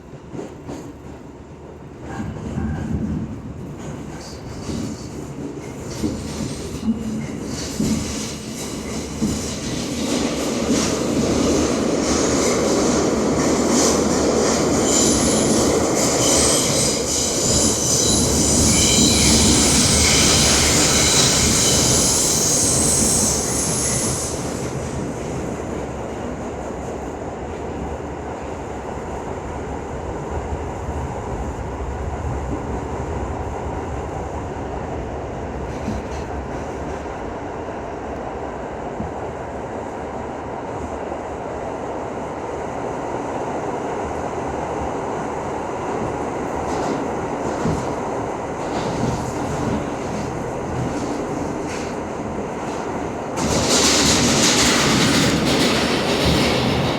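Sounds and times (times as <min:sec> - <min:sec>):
subway train rumbling: 0:00.0 - 0:56.9
subway wheels squealing: 0:03.9 - 0:25.5, 0:46.0 - 0:56.9.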